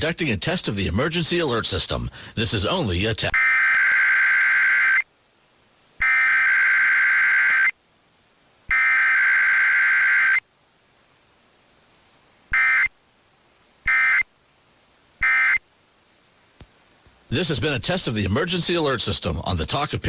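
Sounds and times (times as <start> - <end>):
electronic data warble bursts: 3.4 - 5.1, 6.0 - 7.8, 8.7 - 10.4, 12.5 - 12.9, 13.9 - 14.3, 15.2 - 15.6.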